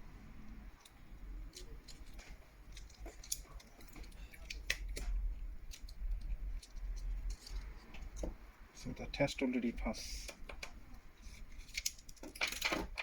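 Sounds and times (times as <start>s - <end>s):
small clicks handling phone parts: 0.8s - 8.2s, 10.3s - 13.0s.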